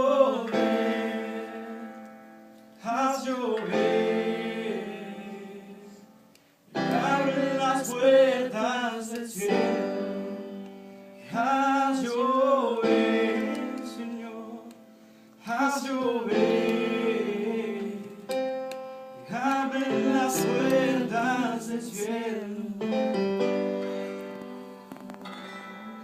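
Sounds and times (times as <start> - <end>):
keyboard piano chords: 0.0 - 26.0
wordless singing sliding in pitch: 2.8 - 18.5, 19.2 - 23.2.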